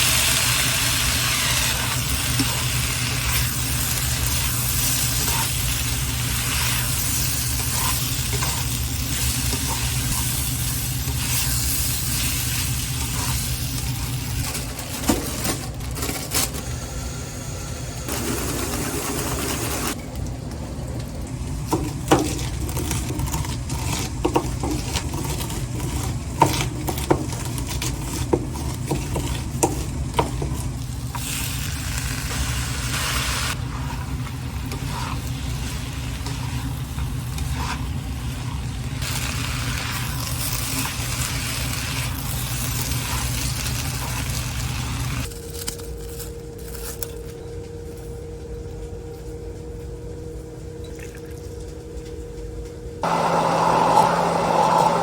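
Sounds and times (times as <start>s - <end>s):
food sizzling in a pan: 0.0s - 14.3s, 31.0s - 45.3s.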